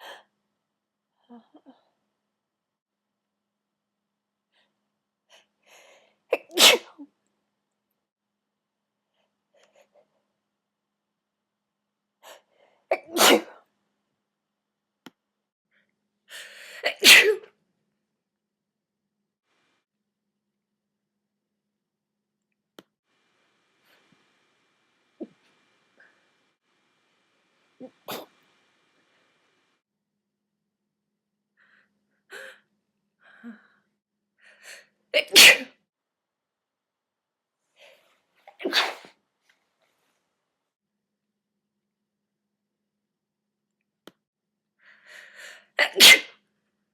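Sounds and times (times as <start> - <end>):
woman sneezing: 6.4 - 7.0, 12.9 - 13.6, 16.8 - 17.5, 35.2 - 35.8, 38.5 - 39.2, 45.8 - 46.4.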